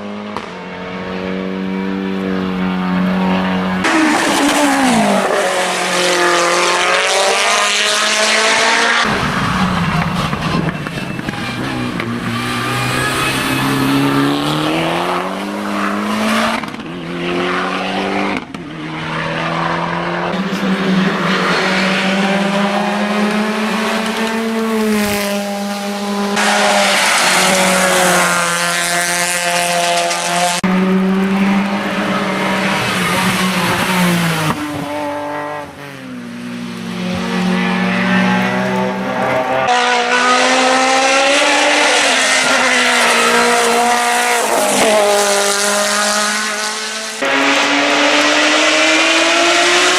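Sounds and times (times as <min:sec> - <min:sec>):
race car engines revving: 0:00.0 - 0:49.9
tyre squeal: 0:09.6 - 0:14.3.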